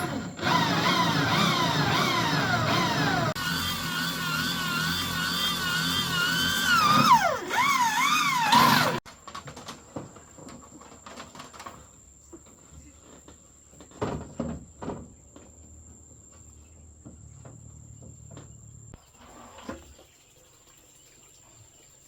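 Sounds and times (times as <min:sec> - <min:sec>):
power tool motor whining: 0:00.0 - 0:09.0.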